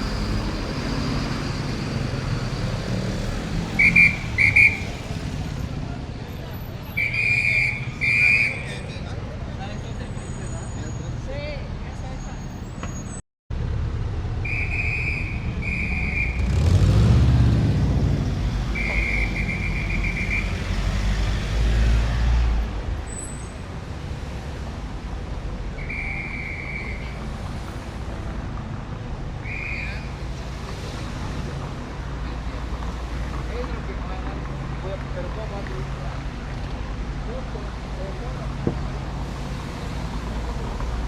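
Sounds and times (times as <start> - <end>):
street traffic passing: 0.0 - 41.0
high whistle blasts: 3.7 - 5.0, 7.0 - 8.8, 14.4 - 16.5, 18.7 - 20.8, 25.8 - 27.2, 29.4 - 30.2.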